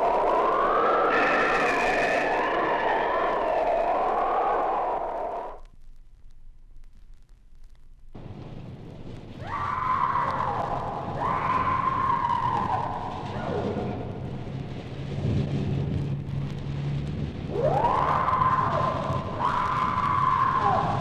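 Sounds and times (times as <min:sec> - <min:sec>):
wailing tone: 0:00.0 - 0:05.6
high whine: 0:00.0 - 0:21.0
low rumbling noise: 0:00.0 - 0:21.0.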